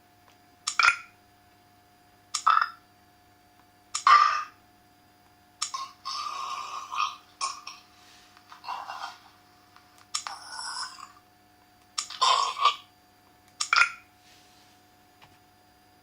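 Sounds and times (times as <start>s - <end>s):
recorded burps: 4.1s - 4.6s, 5.7s - 7.9s, 10.3s - 11.2s, 12.1s - 12.9s.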